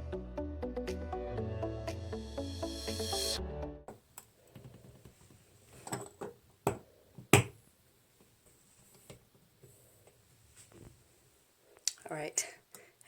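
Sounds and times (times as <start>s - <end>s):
background music: 0.0s - 3.9s.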